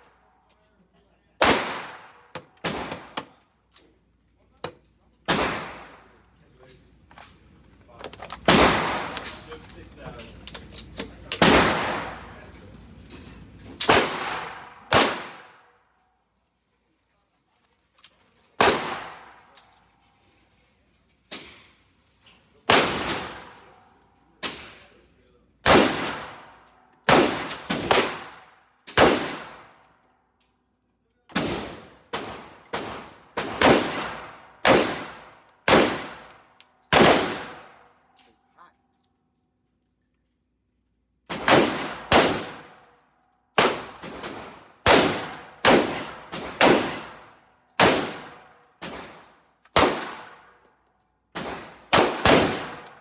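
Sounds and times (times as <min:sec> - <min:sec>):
gunshots: 0:01.4 - 0:03.3, 0:05.3 - 0:06.0, 0:08.4 - 0:09.5, 0:11.3 - 0:12.3, 0:13.8 - 0:15.6, 0:18.6 - 0:19.4, 0:22.7 - 0:23.6, 0:25.6 - 0:29.7, 0:31.3 - 0:36.3, 0:36.9 - 0:37.7, 0:41.3 - 0:42.8, 0:43.6 - 0:50.5, 0:51.4 - 0:53.0.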